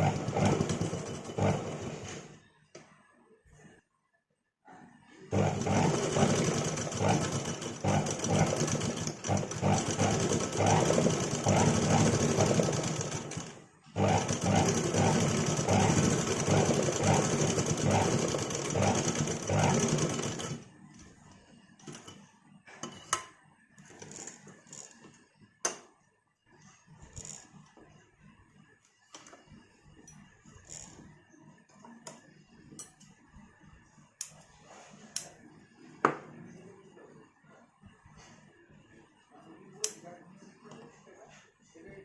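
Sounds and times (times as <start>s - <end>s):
sewing machine running: 0.0s - 2.3s, 5.3s - 20.6s.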